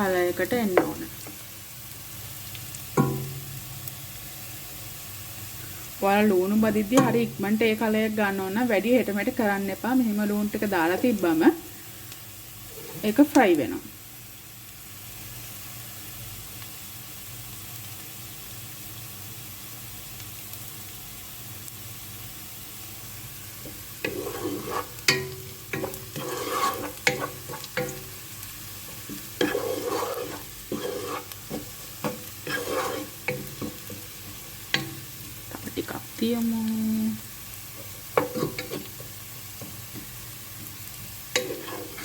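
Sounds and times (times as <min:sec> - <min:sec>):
onions sizzling in oil: 0:00.0 - 0:42.0
spoon scraping a pot: 0:12.7 - 0:13.2, 0:23.6 - 0:28.2, 0:28.8 - 0:35.1, 0:37.8 - 0:39.8, 0:41.3 - 0:42.0.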